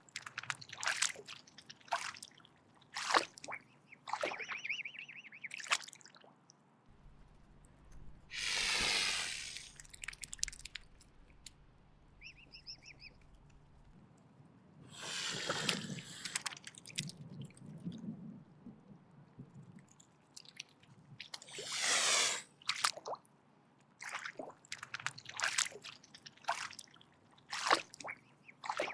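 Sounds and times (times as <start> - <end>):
swan hissing: 7.2 - 13.9, 14.9 - 16.5, 21.5 - 22.5.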